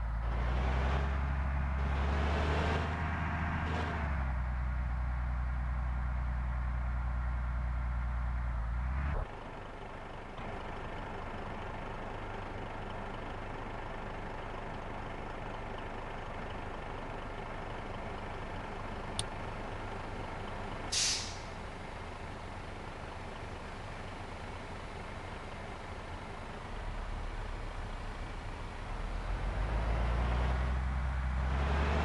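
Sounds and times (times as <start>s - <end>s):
bus diesel engines idling: 0.0s - 0.4s, 2.8s - 31.5s
short sharp hiss: 20.9s - 21.6s.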